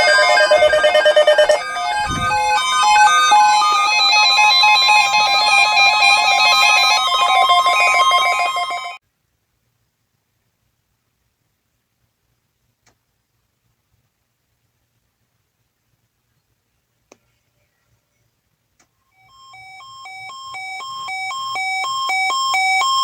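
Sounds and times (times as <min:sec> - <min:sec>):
electronic ringtone melody: 0:00.0 - 0:09.0, 0:19.3 - 0:23.0
low thump: 0:01.9 - 0:02.8.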